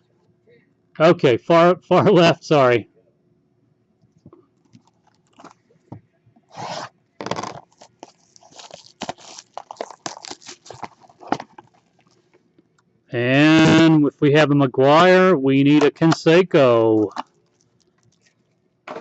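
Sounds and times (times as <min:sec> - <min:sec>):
trading cards rustling and crinkling: 0:04.6 - 0:05.8, 0:06.5 - 0:12.6, 0:17.0 - 0:18.6.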